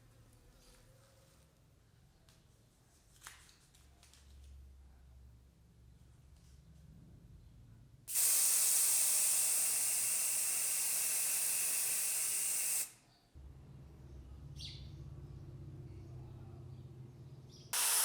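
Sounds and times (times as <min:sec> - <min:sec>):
spray hiss: 0:08.1 - 0:13.0, 0:17.8 - 0:18.0
low hum: 0:13.4 - 0:17.7.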